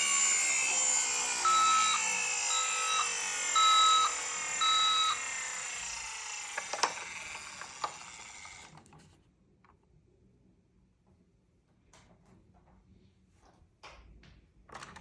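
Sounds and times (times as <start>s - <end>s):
toy siren beep and wail: 0.0s - 8.5s.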